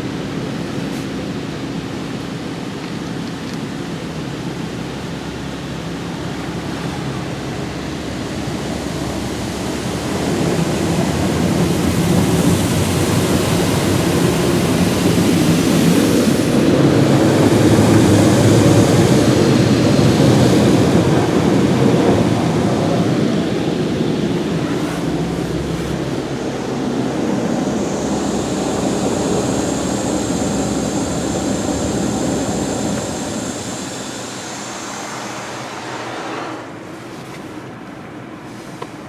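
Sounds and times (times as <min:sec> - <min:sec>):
high-pressure water jets spraying car: 0:00.0 - 0:39.0
steady machine hum: 0:00.0 - 0:39.0.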